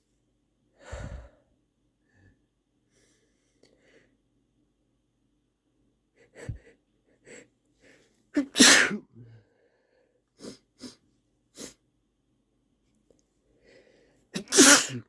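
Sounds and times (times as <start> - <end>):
sniffs and breaths: 6.2 - 8.1
man sneezing: 8.4 - 9.4, 14.4 - 15.0.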